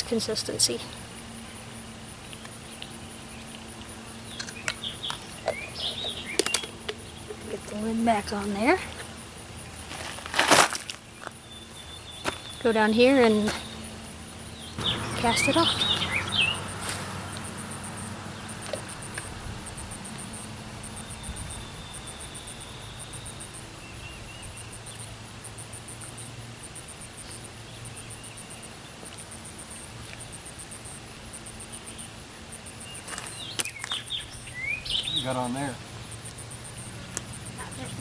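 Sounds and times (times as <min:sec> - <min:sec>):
insect chirping: 0:00.0 - 0:38.0.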